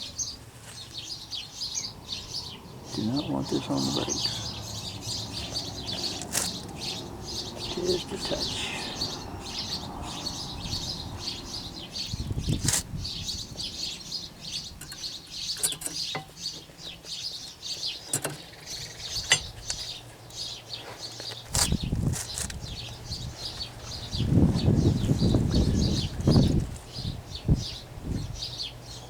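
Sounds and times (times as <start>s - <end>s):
small birds chirping: 0.0s - 29.0s
sharp clicks and knocks: 14.8s - 16.7s, 18.1s - 18.5s.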